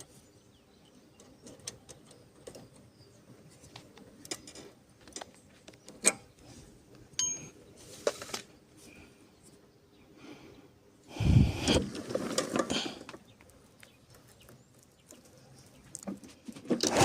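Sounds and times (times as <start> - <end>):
metallic ringing clink: 7.2 - 7.6.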